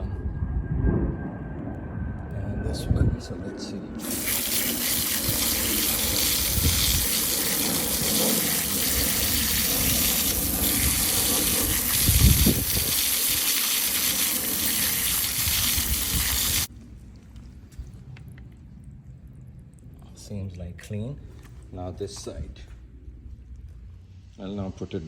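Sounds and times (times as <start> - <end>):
pressure washer spraying water: 4.0 - 16.7.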